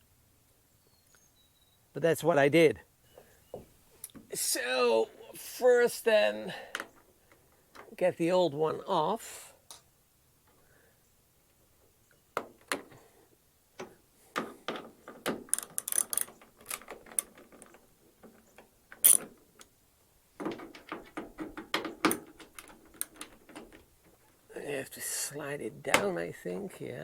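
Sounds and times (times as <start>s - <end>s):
plastic door handle clicking and rattling: 13.8s - 19.7s, 20.4s - 24.3s.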